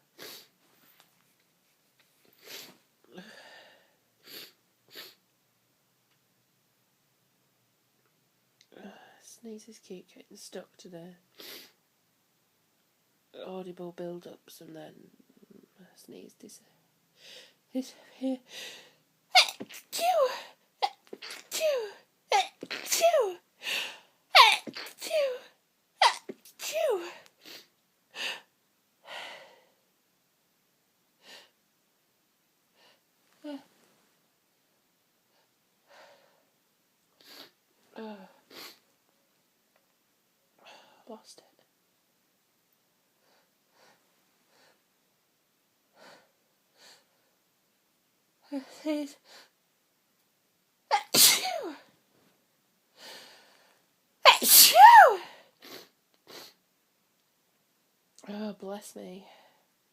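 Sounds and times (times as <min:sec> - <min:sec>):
woman sneezing: 0:19.3 - 0:23.4, 0:24.4 - 0:27.2, 0:50.9 - 0:51.9, 0:54.3 - 0:55.5.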